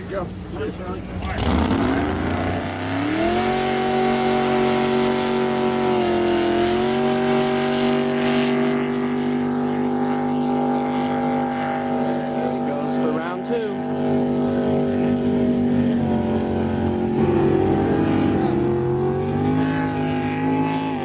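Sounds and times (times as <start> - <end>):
powerful engine revving: 1.2 - 21.0.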